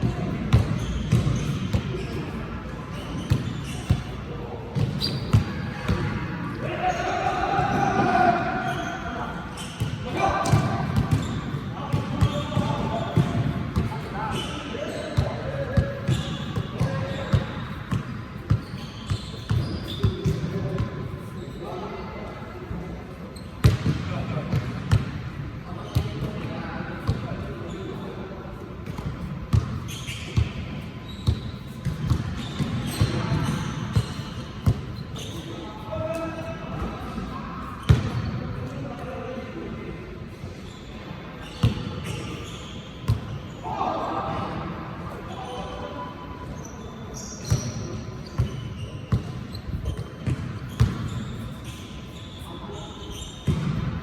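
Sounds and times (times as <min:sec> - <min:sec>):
basketball bouncing on a court: 0:00.1 - 0:02.0, 0:09.8 - 0:14.0, 0:23.6 - 0:25.2, 0:28.8 - 0:30.6, 0:31.2 - 0:35.0, 0:37.8 - 0:38.4, 0:41.6 - 0:41.9, 0:48.4 - 0:51.3, 0:53.4 - 0:54.0
shoe squeaks: 0:00.5 - 0:07.4, 0:08.1 - 0:22.2, 0:23.2 - 0:23.9, 0:27.4 - 0:28.3, 0:29.0 - 0:38.5, 0:40.6 - 0:43.8, 0:45.2 - 0:53.8
basketball bouncing on hard court: 0:48.4 - 0:51.2, 0:53.4 - 0:53.9.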